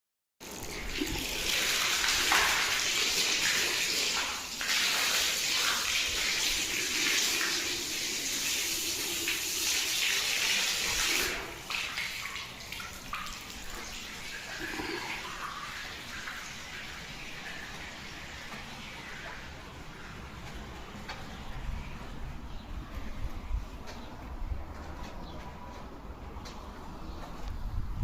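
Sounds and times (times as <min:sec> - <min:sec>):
water running and splashing: 0:00.4 - 0:22.0.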